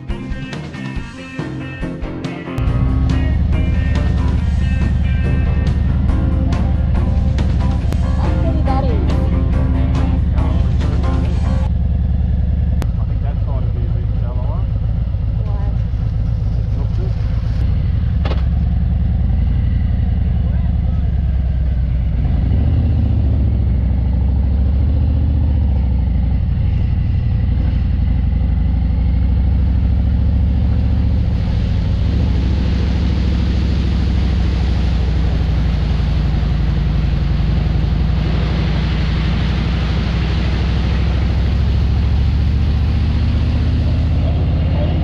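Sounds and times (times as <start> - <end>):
motorcycle engine cruising: 0.0 - 45.0
wind rush: 30.3 - 44.7.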